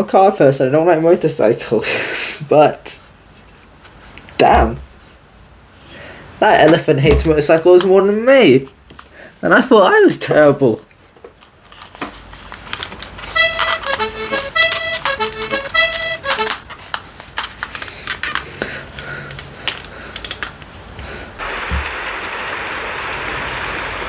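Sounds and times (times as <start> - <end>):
sharp clicks and taps: 13.4 - 16.7.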